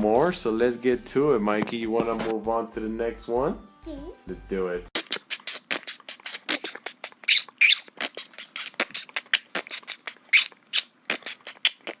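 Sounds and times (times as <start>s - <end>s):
beatbox-like clicks and hisses: 5.0s - 12.0s.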